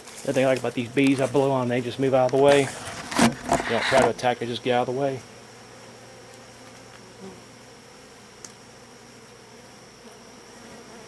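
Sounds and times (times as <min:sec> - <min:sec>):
honeybees buzzing: 0:00.5 - 0:09.7.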